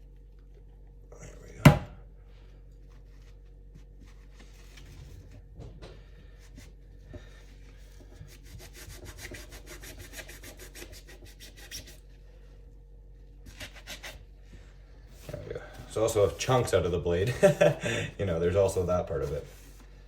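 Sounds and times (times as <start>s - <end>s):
sponge scrubbing knife blade: 8.6s - 12.0s.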